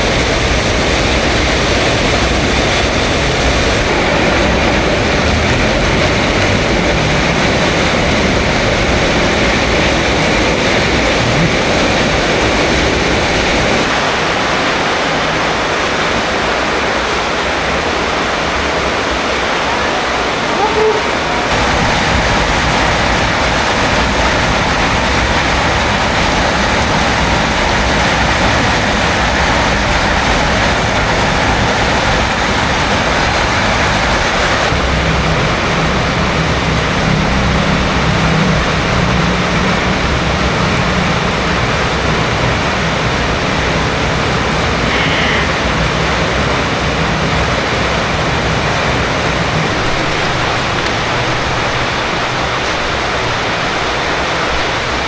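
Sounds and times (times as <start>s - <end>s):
low motor hum: 0.0s - 15.1s
heavy rain: 0.0s - 55.0s.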